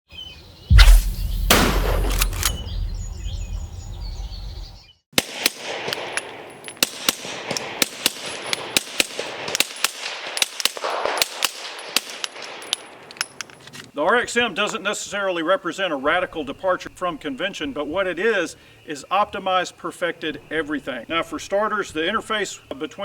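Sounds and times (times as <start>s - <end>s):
suppressed pistol shots: 0.7s - 3.7s
loud boom with low rumble: 0.7s - 4.8s.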